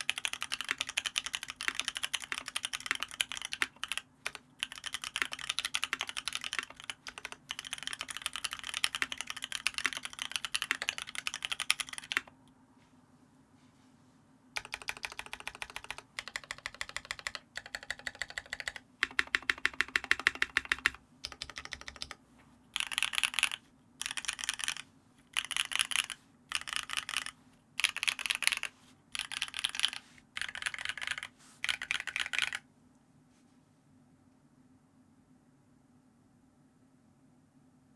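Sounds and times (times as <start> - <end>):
mechanical keyboard typing: 0.0 - 12.4, 14.6 - 22.2, 22.8 - 32.6.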